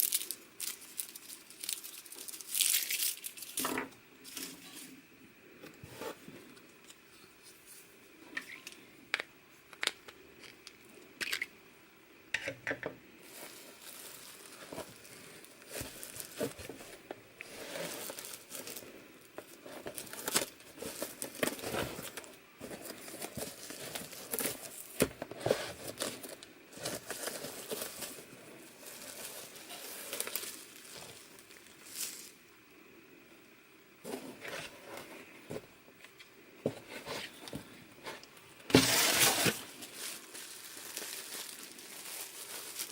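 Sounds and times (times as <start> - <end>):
packaging tearing: 0.0 - 3.6, 28.8 - 32.3, 38.7 - 42.9
packaging crinkling and rustling: 0.0 - 4.8, 13.2 - 32.4, 34.0 - 42.9.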